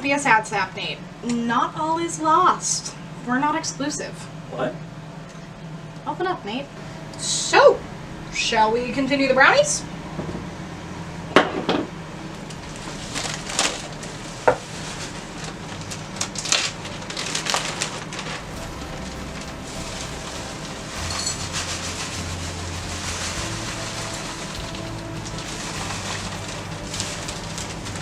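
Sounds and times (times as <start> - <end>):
rustling and scraping: 12.3 - 28.0.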